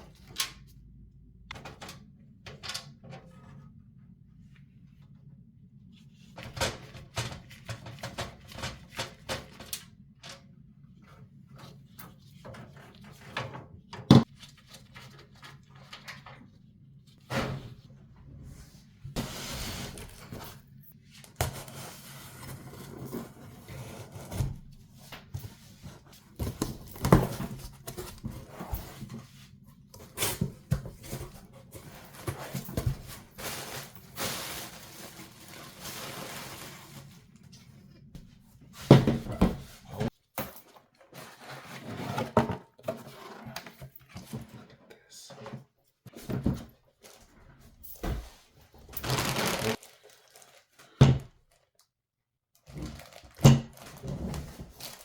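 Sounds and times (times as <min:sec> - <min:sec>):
packaging rustling: 0:32.0 - 0:37.3, 0:48.8 - 0:50.9, 0:52.8 - 0:55.0.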